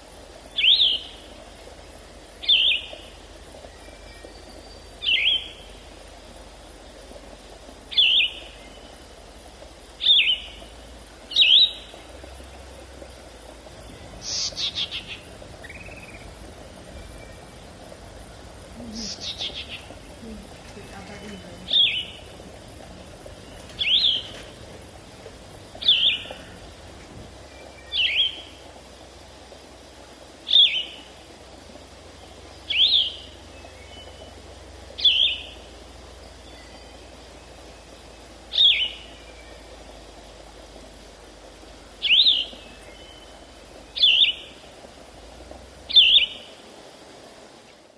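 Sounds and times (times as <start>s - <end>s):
faint background hiss: 0.0s - 47.9s.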